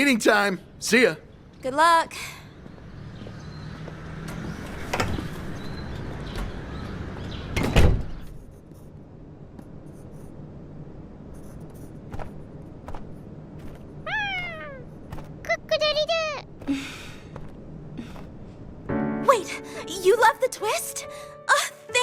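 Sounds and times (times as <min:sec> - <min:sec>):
door closing thump: 0:07.6 - 0:08.2.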